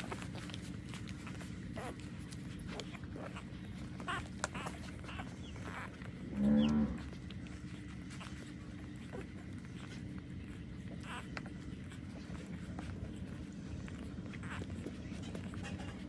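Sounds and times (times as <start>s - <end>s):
puppies squeaking: 0.0s - 16.0s
low animal call: 2.7s - 8.4s.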